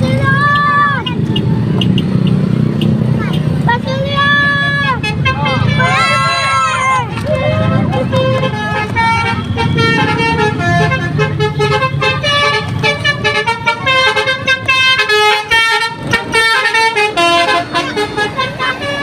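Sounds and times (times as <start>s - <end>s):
engine running: 0.0s - 19.0s
multi-tone bus horn melody: 4.2s - 19.0s.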